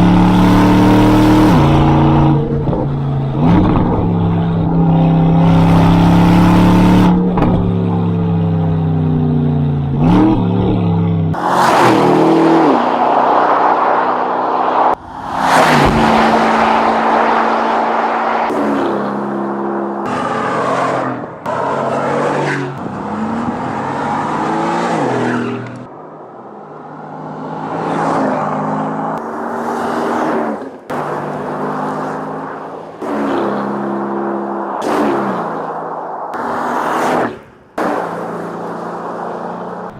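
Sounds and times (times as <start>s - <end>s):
car engines revving: 0.0s - 39.9s
rushing noise: 11.4s - 18.8s, 31.1s - 39.6s.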